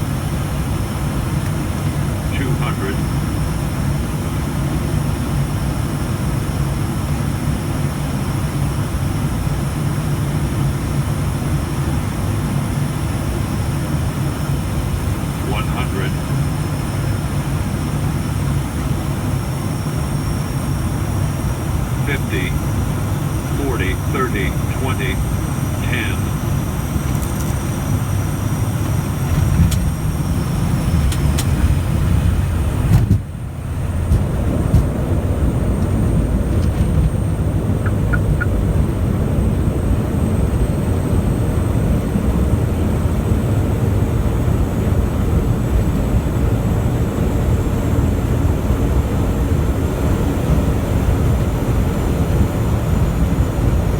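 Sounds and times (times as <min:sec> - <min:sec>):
turboprop engines droning: 0:00.0 - 0:53.9
airflow noise: 0:20.8 - 0:36.8.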